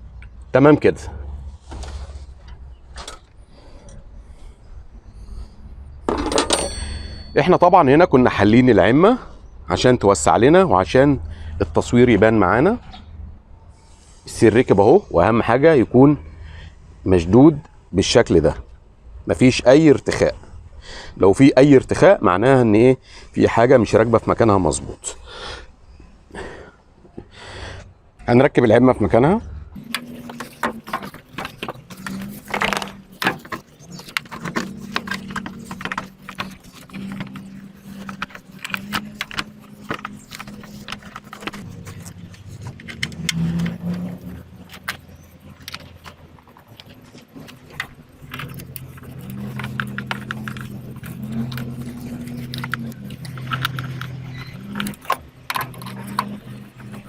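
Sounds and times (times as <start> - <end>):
hand tools and metal clinking: 6.1 - 8.0, 29.8 - 57.0
hand tools clinking on metal: 6.2 - 7.8.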